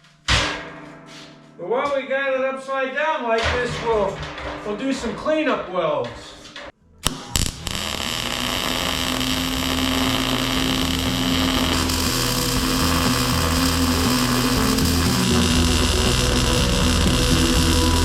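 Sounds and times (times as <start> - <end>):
arc welding buzzing hiss: 7.0 - 18.0.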